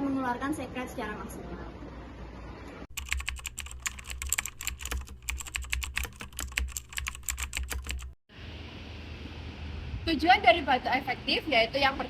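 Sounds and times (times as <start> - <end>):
fast keyboard typing: 2.9 - 8.2.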